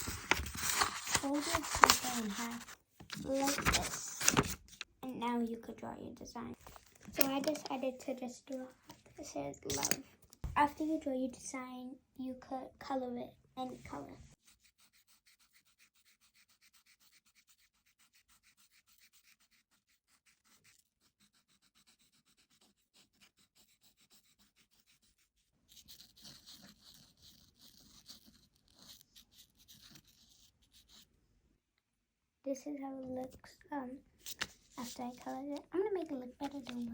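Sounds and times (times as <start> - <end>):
scribbling on paper: 0.0 - 3.8, 14.4 - 31.1.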